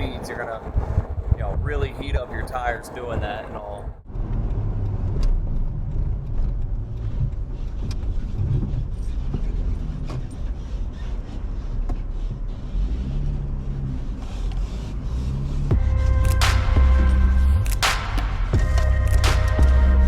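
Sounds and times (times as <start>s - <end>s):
truck engine and tyre rumble: 0.0s - 20.0s.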